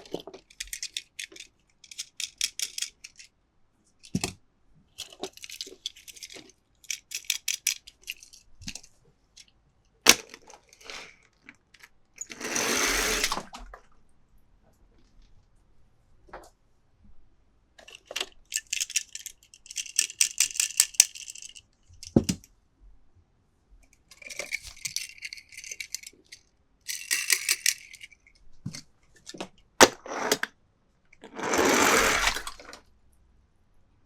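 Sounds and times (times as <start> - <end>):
toy cars clicking and rattling: 0.0 - 3.3, 5.0 - 9.5, 10.1 - 13.5, 17.8 - 22.4, 24.0 - 30.5, 31.2 - 32.9.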